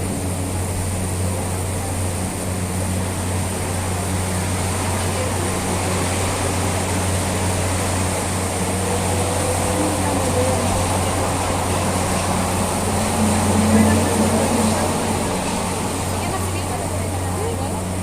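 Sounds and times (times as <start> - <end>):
train running rumble: 0.0 - 18.0.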